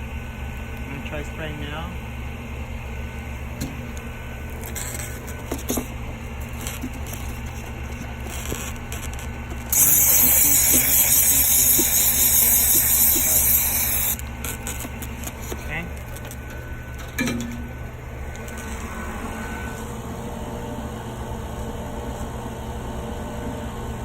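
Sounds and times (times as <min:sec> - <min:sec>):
low machine hum: 0:00.0 - 0:24.0
sprayer hissing: 0:04.8 - 0:16.0.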